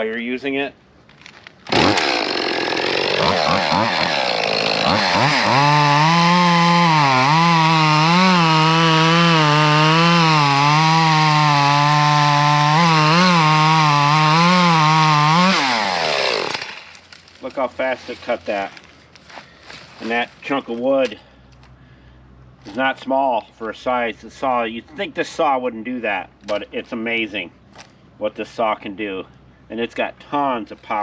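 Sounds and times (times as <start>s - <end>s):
chainsaw cutting wood: 1.7s - 17.2s.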